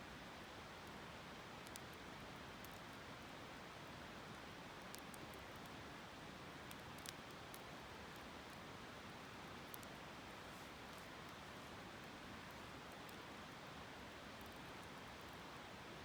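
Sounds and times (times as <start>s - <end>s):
campfire crackling: 4.1s - 15.6s.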